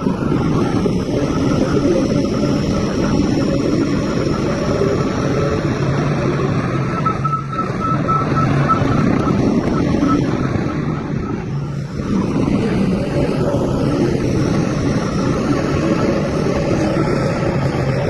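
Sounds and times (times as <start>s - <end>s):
heavy diesel engine running: 0.0s - 18.0s.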